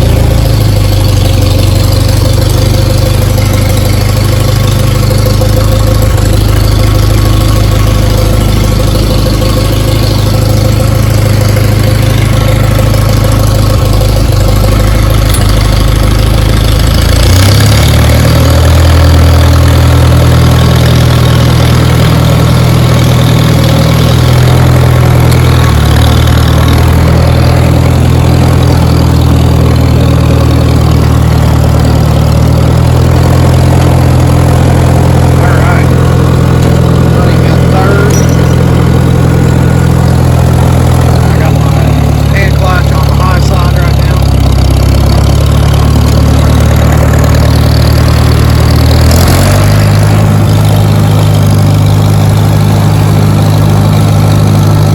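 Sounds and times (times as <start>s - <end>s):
tractor engine running: 0.0s - 54.9s.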